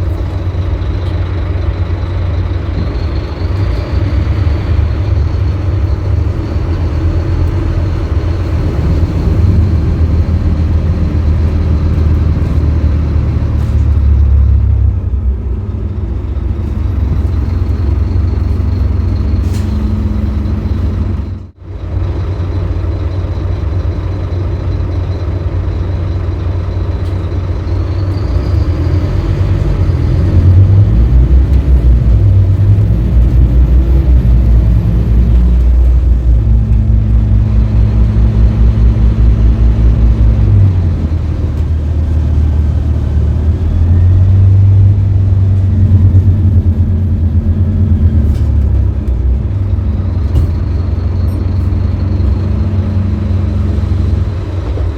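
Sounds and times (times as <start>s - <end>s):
bus diesel engine rumble: 0.0s - 54.9s.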